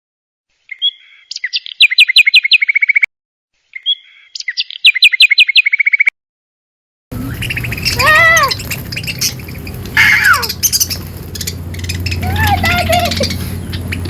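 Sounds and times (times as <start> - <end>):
bird chirping and trilling: 7.1 - 14.0.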